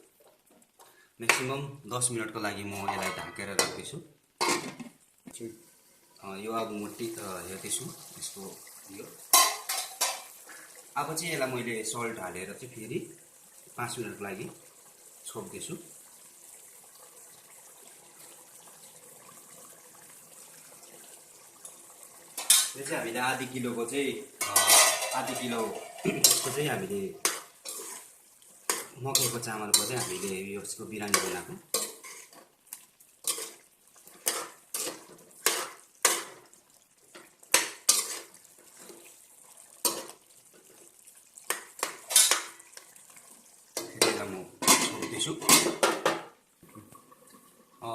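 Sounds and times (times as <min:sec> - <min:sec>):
covered pot hissing: 0:22.1 - 0:32.4
metal spoon scraping a pot: 0:24.4 - 0:30.3, 0:31.1 - 0:32.4, 0:33.2 - 0:36.4, 0:37.1 - 0:38.9.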